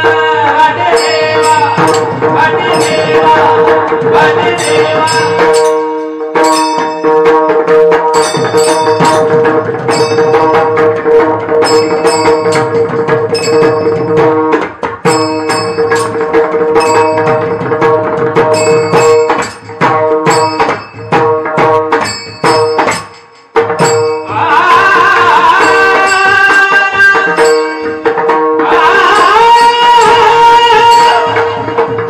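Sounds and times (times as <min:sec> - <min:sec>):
hand drum rhythm: 0:00.0 - 0:32.0
small hand cymbals ringing: 0:04.5 - 0:07.2, 0:08.1 - 0:10.7, 0:11.6 - 0:14.4, 0:15.0 - 0:24.4, 0:27.2 - 0:28.1.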